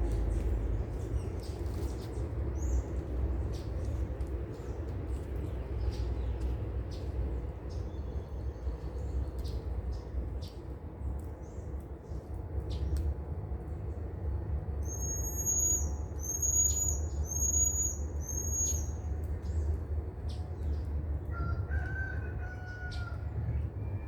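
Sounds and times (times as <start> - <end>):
steady low rumble: 0.0 - 14.9
bird whistled calls: 14.8 - 18.9.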